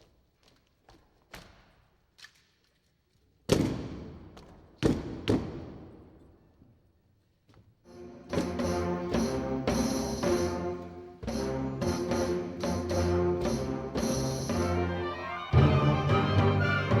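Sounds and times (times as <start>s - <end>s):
loud thuds echoing in a hall: 3.4s - 6.2s.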